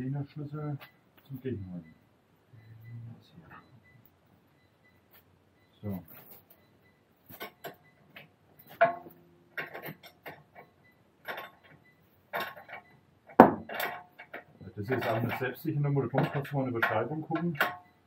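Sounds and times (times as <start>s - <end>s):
metal tools clinking: 7.3s - 10.6s, 11.2s - 17.9s.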